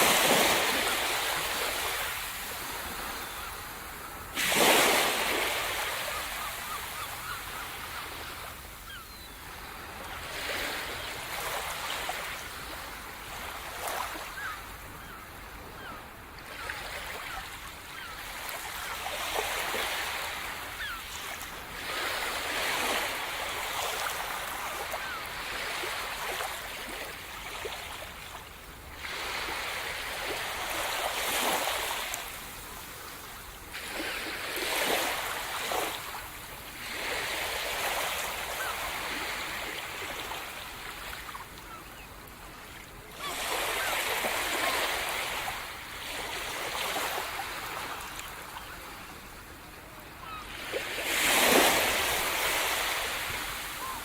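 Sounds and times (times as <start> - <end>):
sea surf breaking on shore: 0.0 - 7.0.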